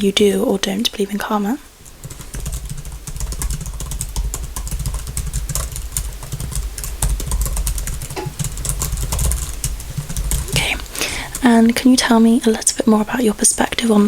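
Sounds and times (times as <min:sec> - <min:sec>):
keyboard typing: 0:02.0 - 0:12.6.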